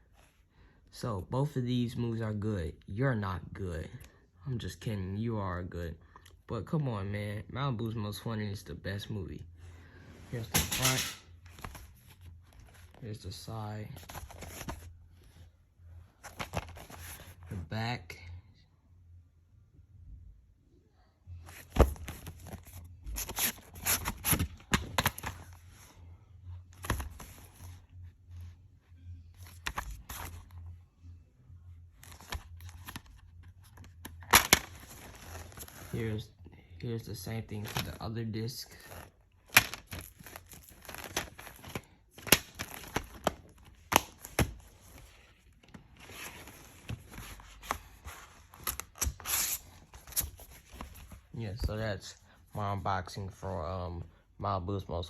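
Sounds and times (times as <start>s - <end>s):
plastic case crackling: 39.0s - 51.2s.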